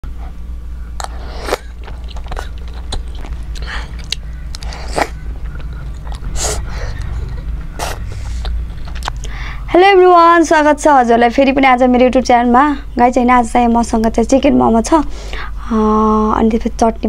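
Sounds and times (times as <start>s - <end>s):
steady low hum: 0.0s - 17.0s
person chewing food: 1.0s - 9.4s.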